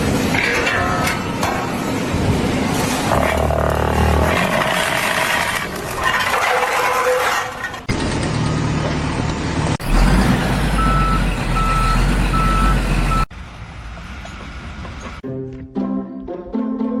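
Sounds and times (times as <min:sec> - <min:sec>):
heavy vehicle engine rumbling: 0:00.0 - 0:15.2
reversing alarm beeps: 0:10.8 - 0:13.3.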